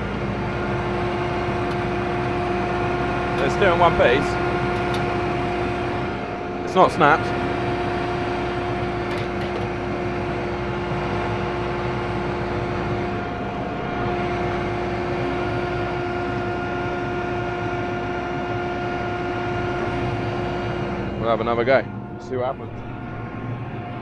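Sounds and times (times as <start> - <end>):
combine harvester mechanical drone: 0.0 - 24.0
high whine: 0.0 - 24.0.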